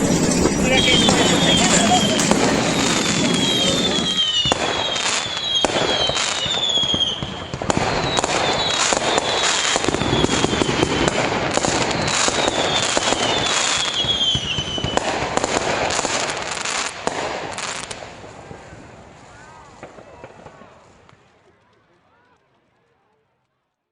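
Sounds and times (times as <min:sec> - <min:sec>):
fireworks crackling: 0:00.0 - 0:04.4.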